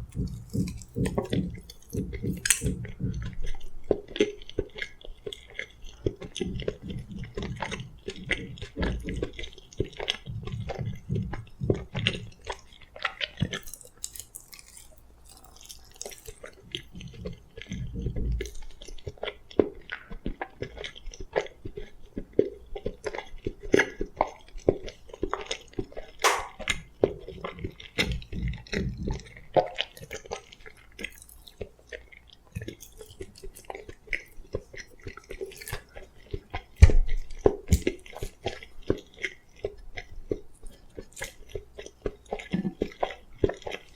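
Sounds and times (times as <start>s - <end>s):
chewing food: 0.0s - 43.9s
wet mouth clicks: 0.0s - 43.9s.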